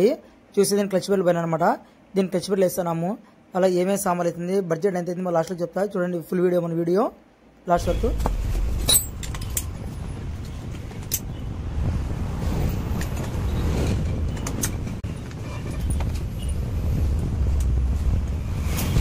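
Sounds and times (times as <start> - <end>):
engine rumble: 7.8 - 19.0.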